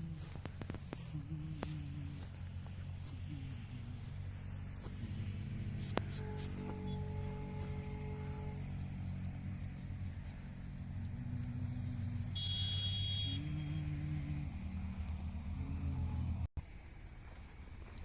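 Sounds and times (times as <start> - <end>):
motor engine running: 0.0 - 16.5
brief high tone: 6.0 - 8.8.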